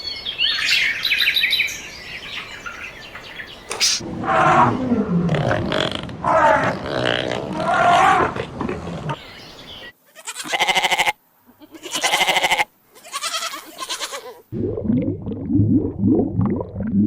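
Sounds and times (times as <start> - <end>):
animal calls: 3.6 - 5.2.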